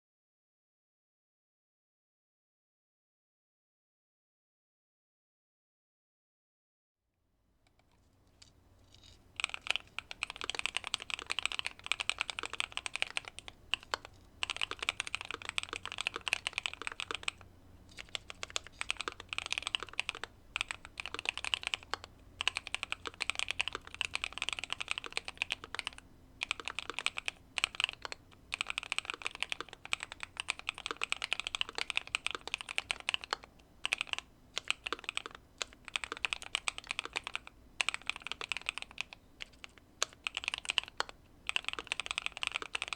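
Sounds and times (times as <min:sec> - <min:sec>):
mechanical keyboard typing: 0:08.8 - 0:42.9.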